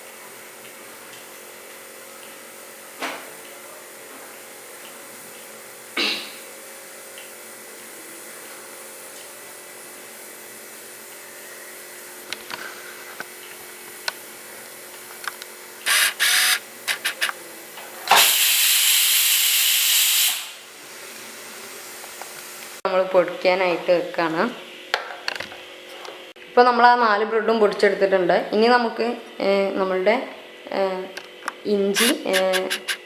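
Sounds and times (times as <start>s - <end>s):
pressure cooker whistling: 15.9s - 17.2s, 18.2s - 20.6s.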